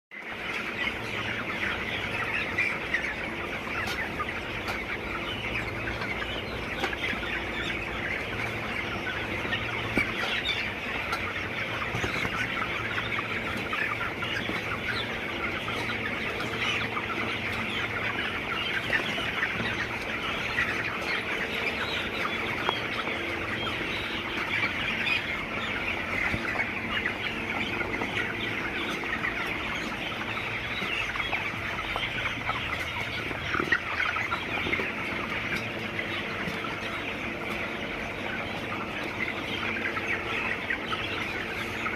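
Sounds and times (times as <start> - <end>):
chickens clucking and peeping: 0.1 - 41.9.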